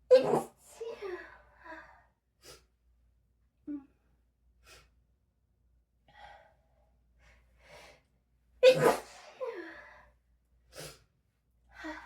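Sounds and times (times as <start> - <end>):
person sneezing: 0.1 - 0.6, 8.6 - 9.4.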